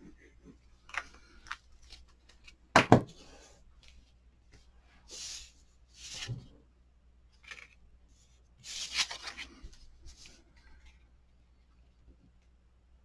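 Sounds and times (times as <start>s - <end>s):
paper rustling on a surface: 8.7s - 10.4s.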